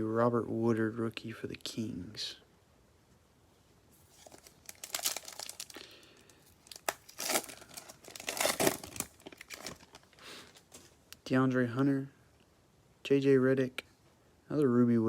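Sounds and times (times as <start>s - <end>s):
foil wrapper tearing and crinkling: 4.0s - 10.8s.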